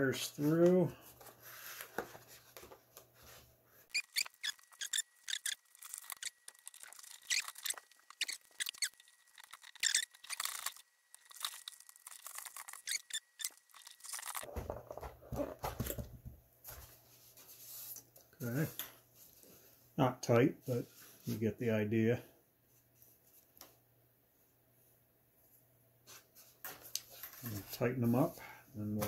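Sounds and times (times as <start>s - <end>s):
small clicks scrapes and rustles: 3.9s - 14.5s.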